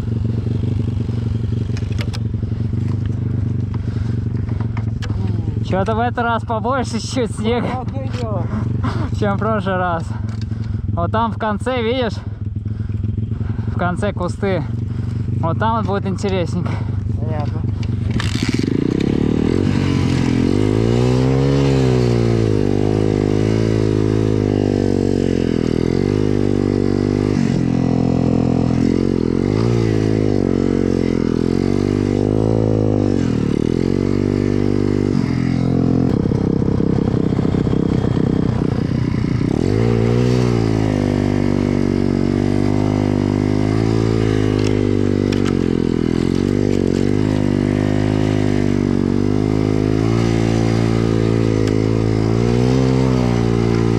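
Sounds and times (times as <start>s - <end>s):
small motorcycle engine revving: 0.0s - 53.9s.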